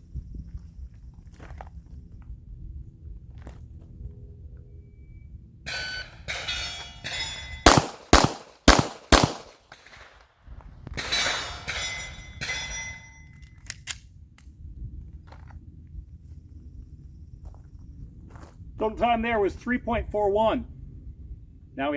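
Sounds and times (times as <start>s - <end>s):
handgun shots: 7.7s - 10.0s
light metallic clatter: 11.0s - 14.0s.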